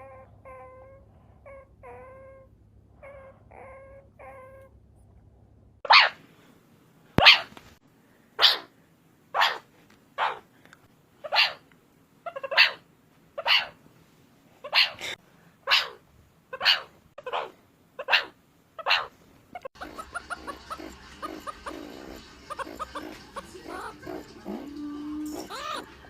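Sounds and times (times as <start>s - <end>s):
meerkat barking calls: 5.8s - 6.2s, 7.2s - 7.5s, 8.4s - 8.7s, 9.3s - 10.5s, 11.2s - 11.6s, 12.2s - 12.8s, 13.4s - 13.8s, 14.6s - 26.0s
meerkat chattering high chirps: 11.2s - 11.6s, 12.2s - 12.8s, 14.6s - 26.0s.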